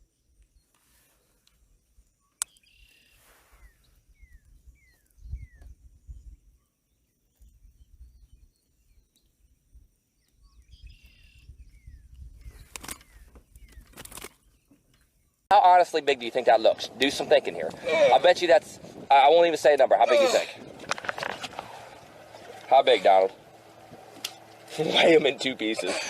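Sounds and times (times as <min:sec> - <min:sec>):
bird chirping: 0:00.0 - 0:19.9
wind rumble: 0:03.6 - 0:06.6, 0:09.4 - 0:14.1, 0:15.6 - 0:25.7.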